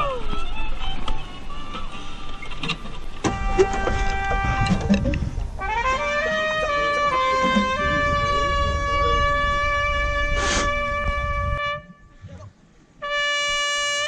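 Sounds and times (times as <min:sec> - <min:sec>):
brass holding sustained note: 0:03.3 - 0:05.0, 0:05.6 - 0:12.2, 0:13.0 - 0:14.0
brief hiss: 0:10.4 - 0:10.8.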